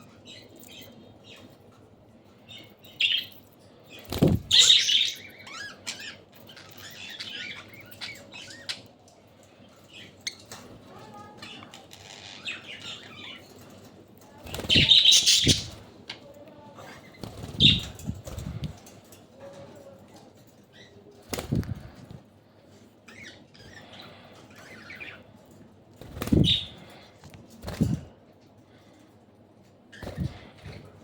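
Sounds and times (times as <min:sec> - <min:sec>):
wings flapping: 0:04.0 - 0:04.8, 0:14.4 - 0:15.9, 0:17.2 - 0:18.8, 0:21.2 - 0:22.1, 0:26.0 - 0:26.8, 0:27.6 - 0:28.1.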